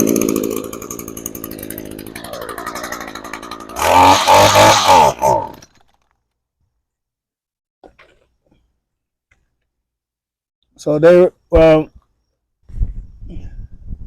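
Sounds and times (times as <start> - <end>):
trimmer engine revving: 0.0 - 5.7.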